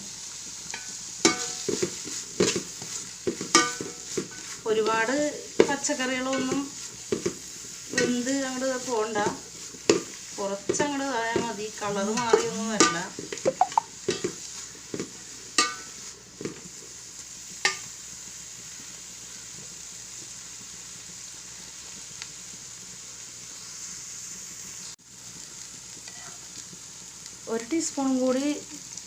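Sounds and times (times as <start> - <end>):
vegetables sizzling in a pan: 0.0 - 29.0
spatula scraping a pan: 0.7 - 13.4.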